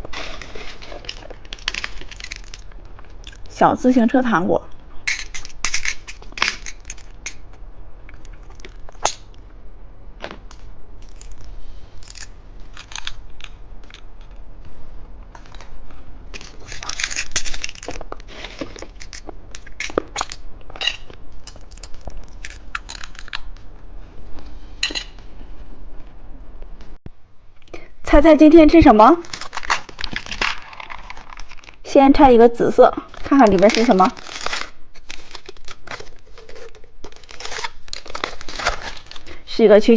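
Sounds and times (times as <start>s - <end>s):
plastic packaging crinkling: 0.0s - 3.5s, 16.4s - 23.5s, 29.2s - 31.8s, 33.0s - 39.4s.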